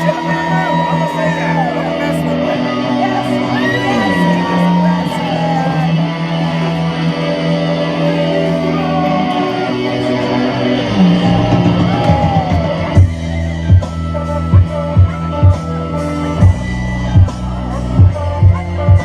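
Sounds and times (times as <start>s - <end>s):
electric guitar chords: 0.0s - 19.0s
live rock band playing: 2.0s - 19.0s.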